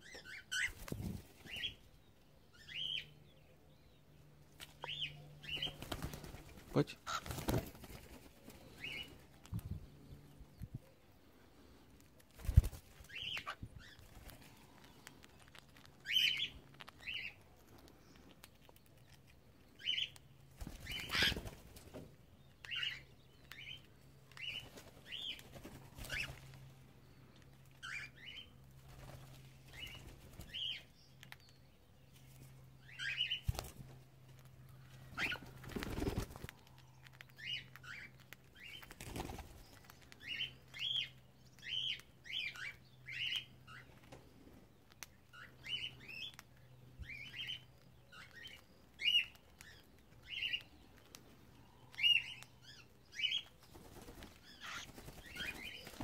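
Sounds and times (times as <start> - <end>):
cockatiels chirping: 0.0 - 0.8, 13.1 - 14.0, 20.8 - 21.4, 27.8 - 28.5, 35.2 - 35.4, 37.4 - 38.9, 47.0 - 50.7, 54.4 - 56.0
wings flapping: 0.6 - 1.6, 5.5 - 9.0, 12.2 - 14.6, 20.5 - 22.0, 24.6 - 26.6, 33.4 - 34.0, 35.1 - 36.5, 38.8 - 39.9, 53.6 - 56.0.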